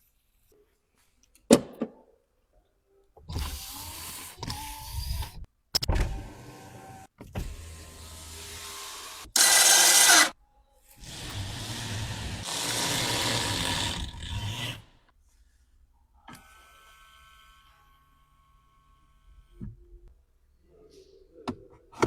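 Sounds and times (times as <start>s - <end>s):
electric mechanisms operating: 6.0s - 10.4s.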